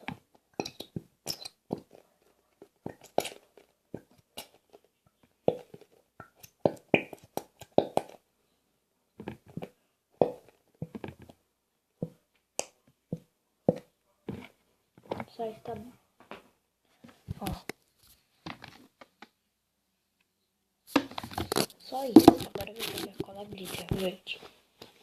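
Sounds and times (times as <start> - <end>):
plastic glue bottle crinkling: 0.0 - 8.2, 20.9 - 25.0
glue pouring: 20.9 - 23.1.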